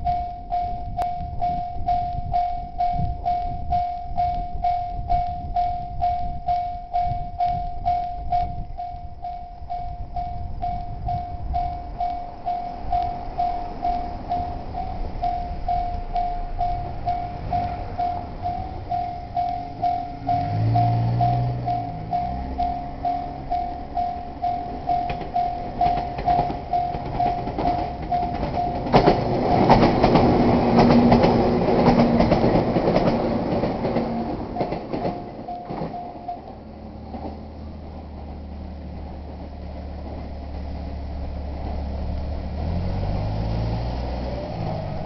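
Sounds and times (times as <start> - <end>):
level crossing bell ringing: 0.0 - 31.8, 32.5 - 36.8
vehicle engine idling: 0.0 - 32.8
train wheels clattering: 12.4 - 41.8.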